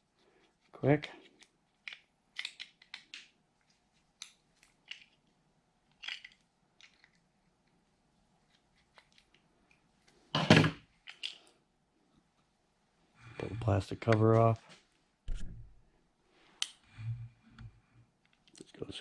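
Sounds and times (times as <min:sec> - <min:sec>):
plastic clicks and crackles: 0:01.2 - 0:07.8.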